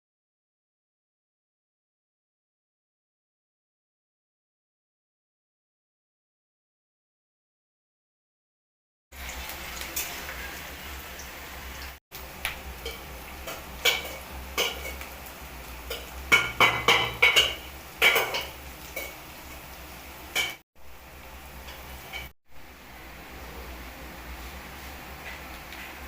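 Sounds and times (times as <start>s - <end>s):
metal utensils scraping a pot: 9.8s - 10.8s, 21.7s - 22.3s.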